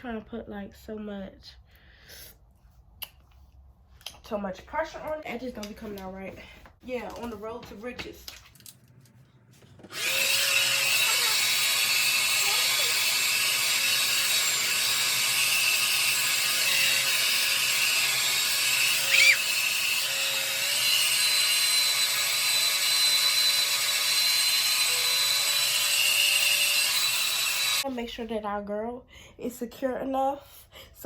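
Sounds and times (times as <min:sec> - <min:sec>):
hair dryer blowing: 0:09.8 - 0:27.8
high-pitched squeak: 0:19.0 - 0:19.5.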